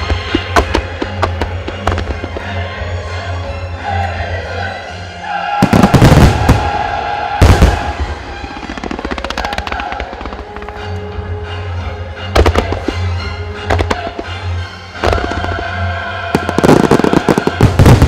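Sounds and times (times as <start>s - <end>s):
firework shells booming and crackling: 0.0s - 2.6s, 5.6s - 10.9s, 12.3s - 18.0s
music: 0.0s - 18.0s.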